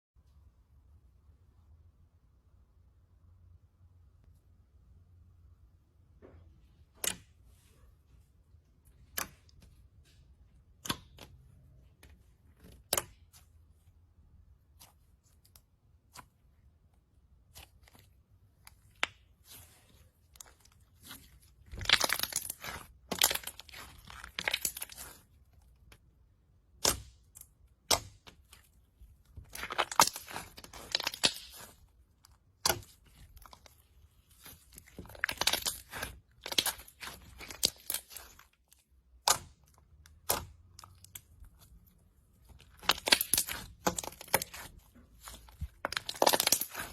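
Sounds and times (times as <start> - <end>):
slime popping and crackling: 17.3 - 26.0, 26.6 - 46.9.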